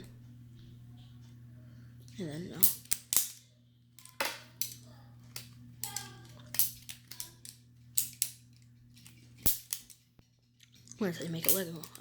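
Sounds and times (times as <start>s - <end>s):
plastic pieces clicking: 4.0s - 10.0s, 11.4s - 12.0s.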